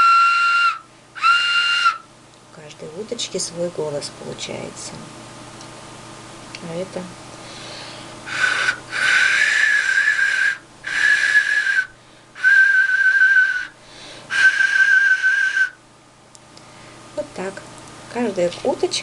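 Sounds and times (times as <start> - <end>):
clay whistle notes: 0.0 - 2.1, 8.3 - 15.8.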